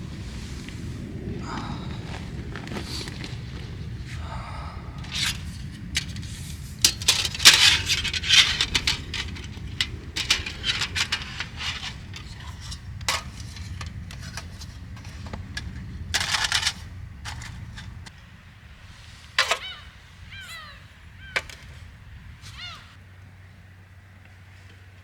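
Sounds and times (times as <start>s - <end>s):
steady low rumble: 0.0s - 23.7s
objects clinking and scraping: 5.0s - 18.1s, 19.3s - 21.8s.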